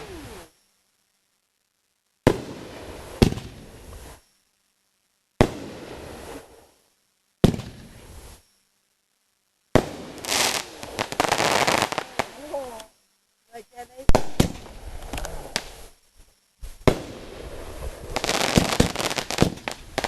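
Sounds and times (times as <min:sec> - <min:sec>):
fireworks bangs: 0:02.2 - 0:04.2, 0:05.4 - 0:06.6, 0:07.4 - 0:08.4, 0:09.7 - 0:12.6, 0:14.1 - 0:15.9, 0:16.6 - 0:20.0
rumbling crackling firework tail: 0:02.2 - 0:04.2, 0:05.4 - 0:06.8, 0:07.4 - 0:08.4, 0:09.7 - 0:12.8, 0:14.1 - 0:16.0, 0:16.6 - 0:20.0
rapid crackling pops: 0:09.7 - 0:12.9, 0:14.1 - 0:20.0.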